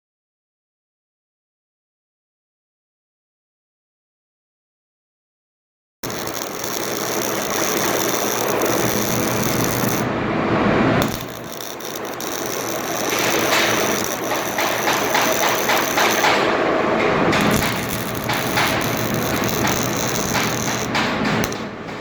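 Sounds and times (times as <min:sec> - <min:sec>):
sharp metal clicks and clatter: 0:06.0 - 0:10.1, 0:11.0 - 0:22.0.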